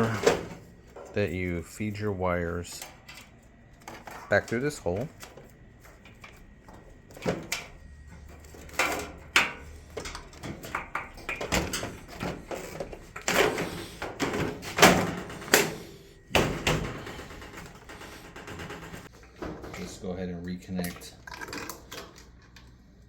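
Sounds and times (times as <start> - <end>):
plastic parts knocking and clicking: 8.6 - 15.8.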